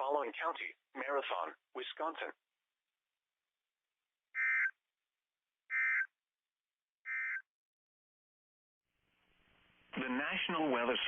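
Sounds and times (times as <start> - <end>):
two-tone data buzz bursts: 4.4 - 4.8, 5.7 - 6.1, 7.1 - 7.5.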